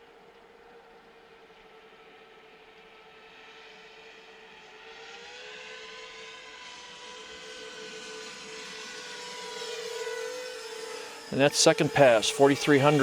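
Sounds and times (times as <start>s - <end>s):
quadcopter motors whining: 5.4s - 13.0s.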